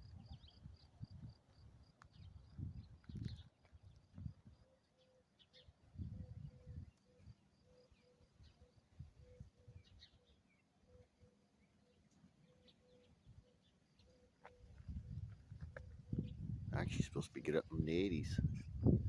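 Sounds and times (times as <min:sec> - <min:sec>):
wind buffeting microphone: 0:00.0 - 0:04.6, 0:05.9 - 0:07.0, 0:14.7 - 0:19.0
faint bird chirps: 0:02.0 - 0:16.8.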